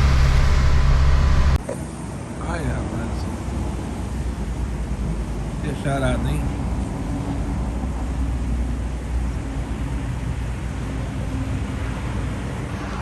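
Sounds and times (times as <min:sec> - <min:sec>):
low engine hum: 0:00.0 - 0:02.4
road noise: 0:00.0 - 0:13.0.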